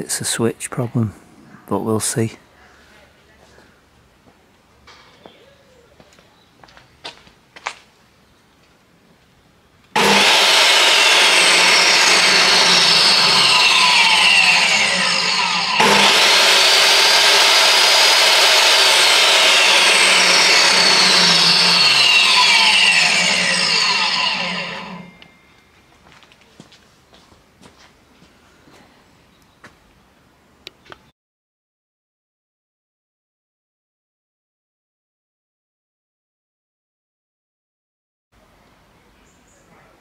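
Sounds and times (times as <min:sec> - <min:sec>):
table saw running with whine: 0:10.0 - 0:25.6.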